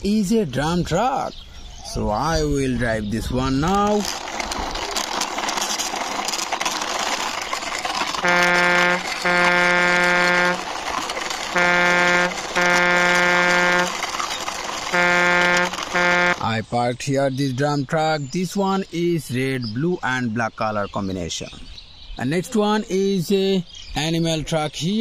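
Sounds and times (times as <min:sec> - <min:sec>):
truck horn honking: 0:08.1 - 0:14.2, 0:14.8 - 0:16.5.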